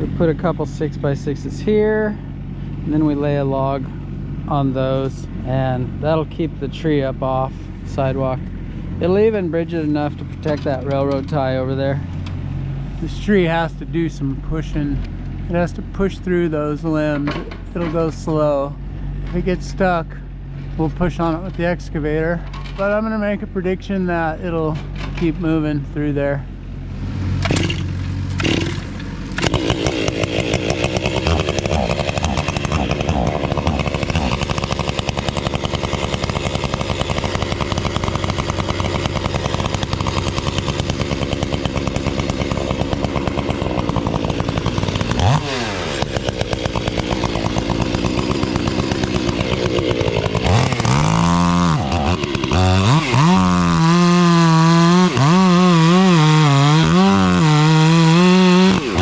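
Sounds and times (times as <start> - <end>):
chainsaw cutting tree trunk: 27.3 - 59.0.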